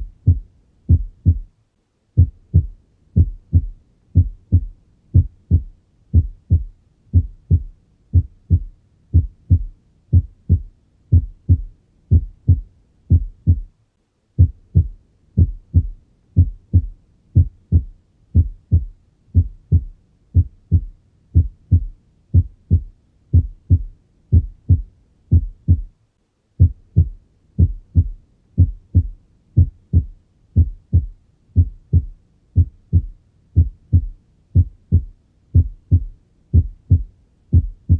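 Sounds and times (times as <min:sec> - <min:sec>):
heartbeat lub-dub: 0:00.0 - 0:01.6, 0:02.2 - 0:13.8, 0:14.4 - 0:26.0, 0:26.6 - 0:37.9.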